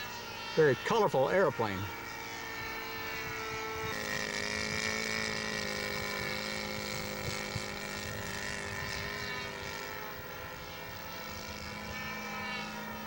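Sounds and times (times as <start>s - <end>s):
model airplane engine: 0.0s - 13.0s.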